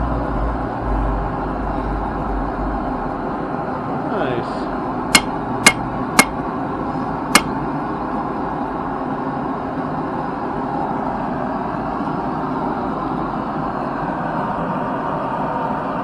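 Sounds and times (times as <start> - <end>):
hammer ringing on steel: 5.2 - 6.3.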